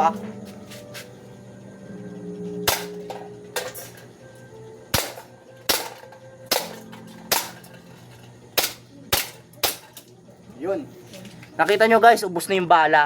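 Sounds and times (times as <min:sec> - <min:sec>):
airsoft pistol shots: 0:05.0 - 0:07.6.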